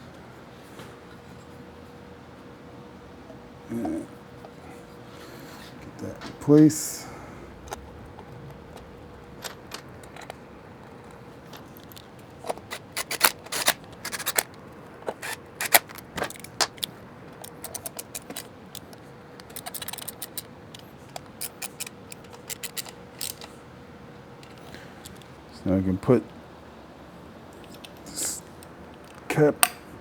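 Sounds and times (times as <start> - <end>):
small parts clicking and scraping: 7.6 - 23.7, 24.3 - 25.4, 27.5 - 29.8.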